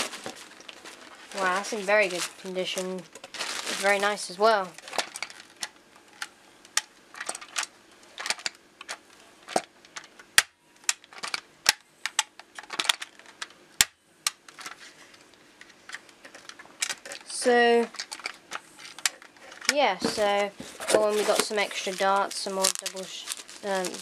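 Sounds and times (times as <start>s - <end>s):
packaging rustling: 0.0s - 6.3s, 17.9s - 24.0s
plastic toys clicking and knocking: 4.8s - 14.8s, 15.6s - 24.0s.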